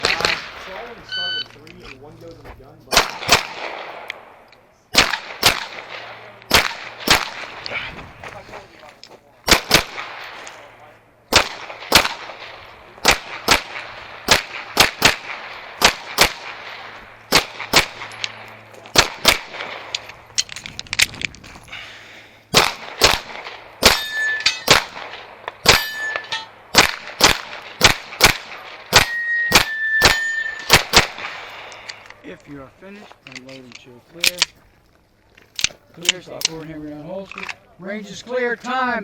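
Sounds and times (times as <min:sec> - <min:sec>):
airsoft pistol shots: 0:02.9 - 0:04.3, 0:04.9 - 0:07.8, 0:09.5 - 0:10.3, 0:11.3 - 0:20.0, 0:22.5 - 0:31.8
metallic ring of steel targets: 0:23.8 - 0:25.0, 0:25.6 - 0:26.6, 0:28.9 - 0:30.8.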